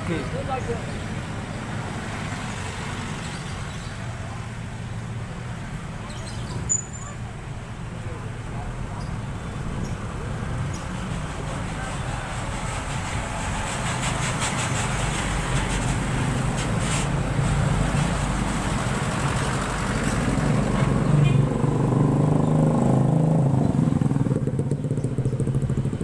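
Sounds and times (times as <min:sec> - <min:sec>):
street noise: 0:00.0 - 0:26.0
motorcycle engine running: 0:21.6 - 0:26.0.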